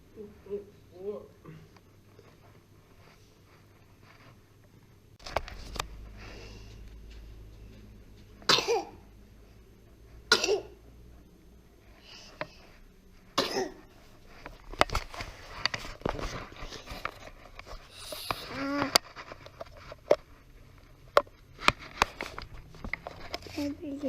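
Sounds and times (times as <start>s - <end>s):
small clicks and rustles: 1.7s - 8.4s, 14.0s - 24.0s.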